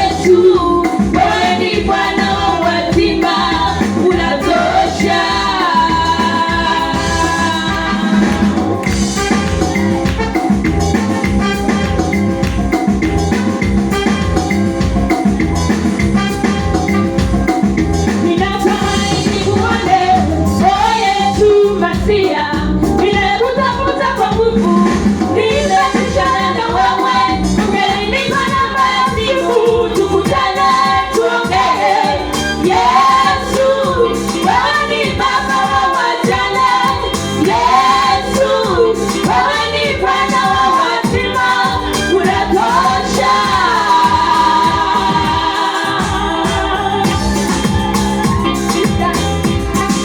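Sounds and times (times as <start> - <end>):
children's choir singing: 0.0 - 8.9, 25.4 - 48.2
instrumental accompaniment with beat: 0.0 - 50.0.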